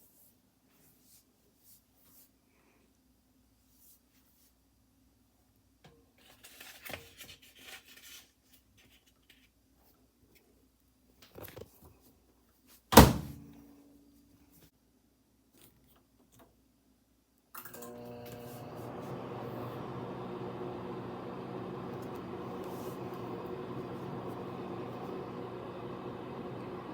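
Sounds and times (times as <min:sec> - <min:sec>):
rustling and handling noises: 0:00.0 - 0:02.9, 0:03.5 - 0:04.8, 0:06.0 - 0:12.9
microwave door shutting: 0:13.0 - 0:13.4.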